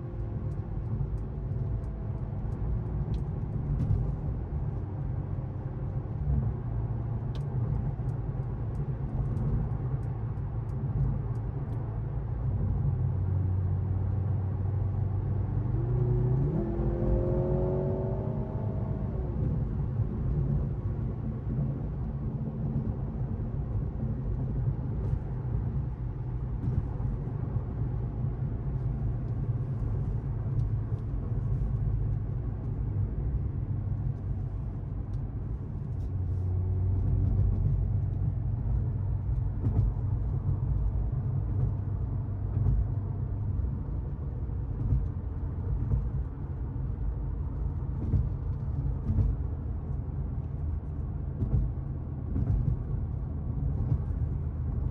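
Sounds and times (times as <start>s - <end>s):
car engine rumbling: 0.0s - 54.9s.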